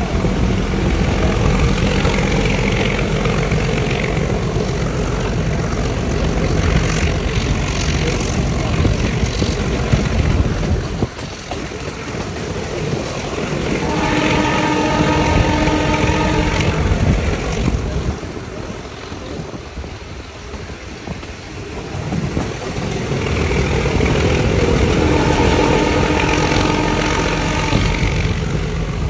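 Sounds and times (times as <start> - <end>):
toy train rumbling: 0.0 - 29.0
steady pitched tone: 24.0 - 28.4.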